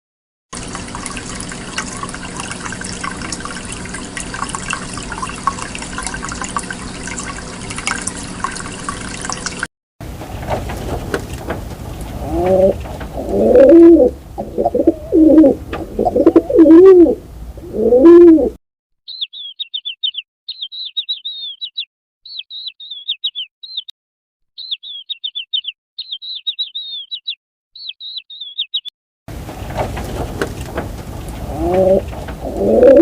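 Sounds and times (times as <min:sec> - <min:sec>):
pigeon cooing: 0:12.1 - 0:18.6, 0:31.4 - 0:33.0
small bird chirping: 0:19.0 - 0:23.9, 0:24.5 - 0:28.9.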